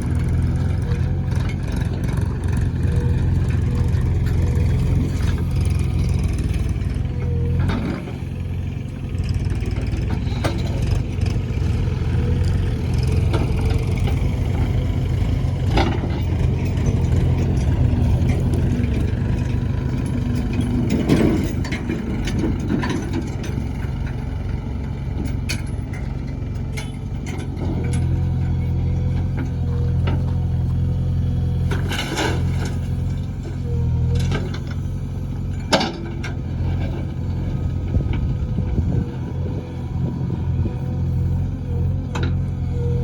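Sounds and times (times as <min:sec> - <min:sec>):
diesel engine running: 0:00.0 - 0:43.0.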